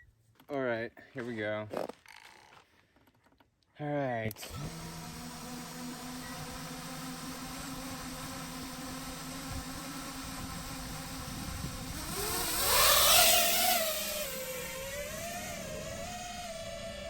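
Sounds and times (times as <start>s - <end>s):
drone motors whining: 4.3s - 17.0s
propeller wash rushing: 4.4s - 17.0s.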